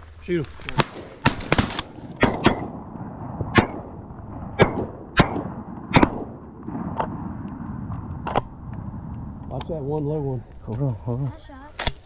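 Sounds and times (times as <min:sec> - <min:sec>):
shotgun blasts: 0:00.7 - 0:07.6.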